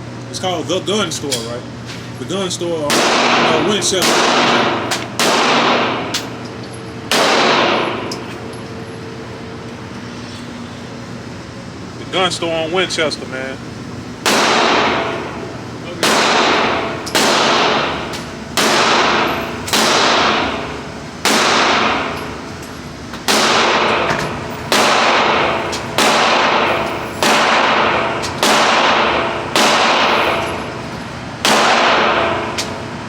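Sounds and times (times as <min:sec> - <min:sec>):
handgun shots echoing: 0:16.0 - 0:17.9, 0:18.6 - 0:20.4, 0:24.7 - 0:30.4.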